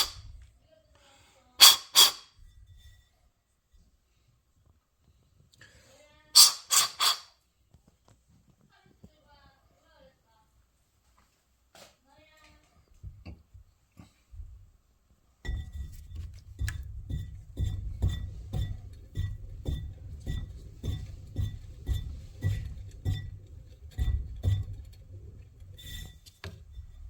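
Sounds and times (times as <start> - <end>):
strokes on a clay teapot: 0.0 - 0.4, 1.6 - 4.0, 6.4 - 7.3, 15.4 - 27.0.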